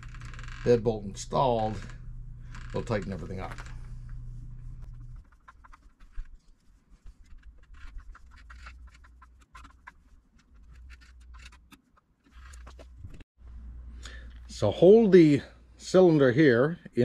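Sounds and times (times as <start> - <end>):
low hum: 0.0 - 6.3.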